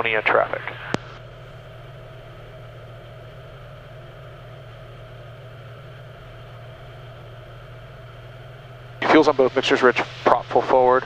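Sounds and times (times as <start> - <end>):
propeller aircraft engine drone: 0.0 - 11.0
intercom hiss: 9.0 - 11.0.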